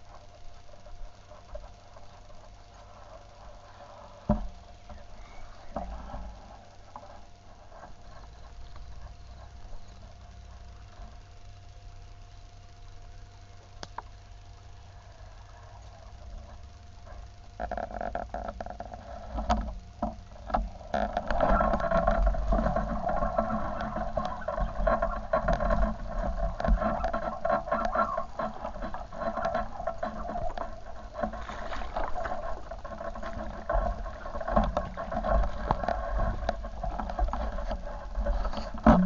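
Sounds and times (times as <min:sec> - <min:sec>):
stream water running and splashing: 0:20.8 - 0:39.0.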